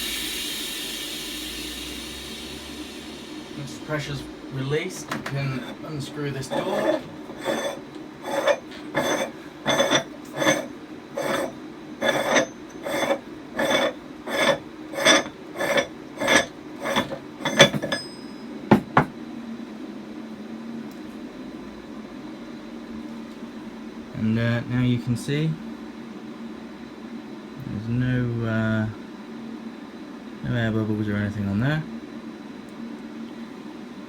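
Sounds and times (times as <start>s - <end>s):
metal door unscrewing scrape: 5.6s - 18.0s.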